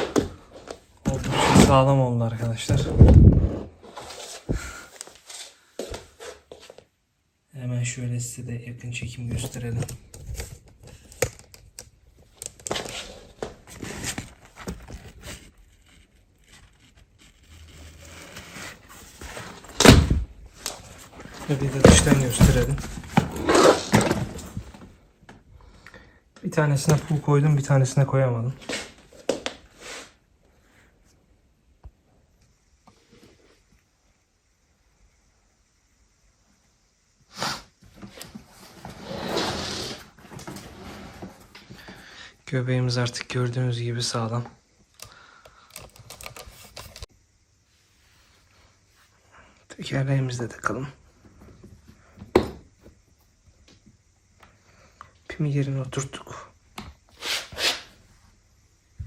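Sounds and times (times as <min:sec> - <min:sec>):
plastic scraping and rustling: 0:09.3 - 0:25.0.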